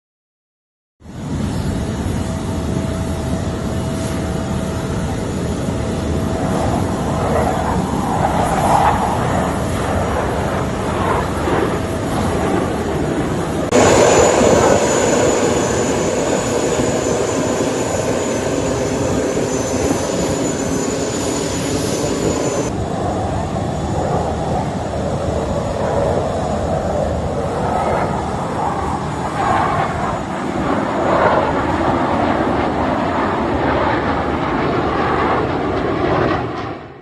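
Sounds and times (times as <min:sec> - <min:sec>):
jet engine rushing: 0:01.1 - 0:37.0
thin high-pitched whine: 0:13.8 - 0:22.7.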